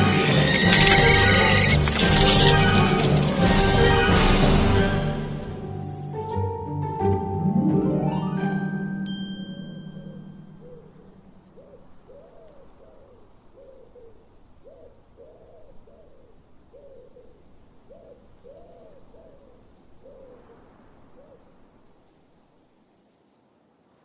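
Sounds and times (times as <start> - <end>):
bird hooting calls: 0.0 - 4.2, 9.6 - 21.8.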